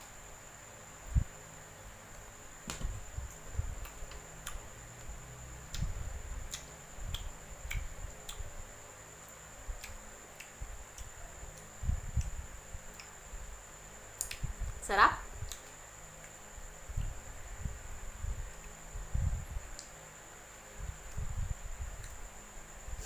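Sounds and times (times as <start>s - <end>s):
soft low thumps: 2.6s - 3.9s.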